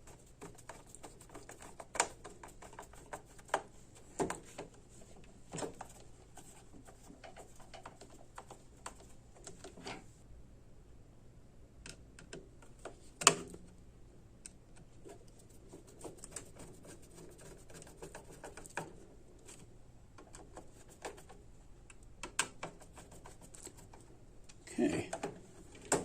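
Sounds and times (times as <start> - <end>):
small clicks and taps of screws: 11.8 - 13.4.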